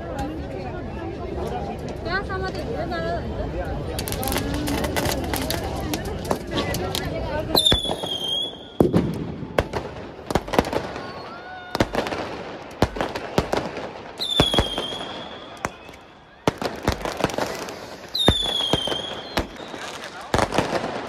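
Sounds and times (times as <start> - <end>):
firework crackling: 3.7 - 21.0
fireworks cracks and bangs: 3.8 - 21.0
firework whistles: 7.5 - 9.0, 10.7 - 12.5, 14.1 - 21.0.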